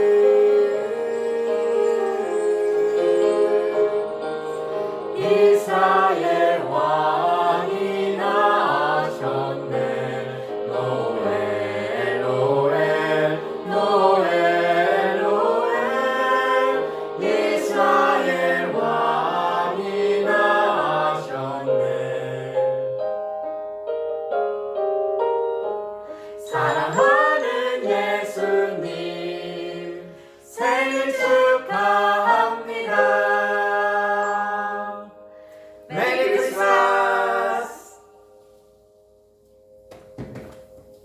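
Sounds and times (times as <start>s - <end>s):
group singing: 0.0s - 22.9s, 26.5s - 35.2s, 35.9s - 38.2s
instrumental backing track: 22.6s - 41.0s.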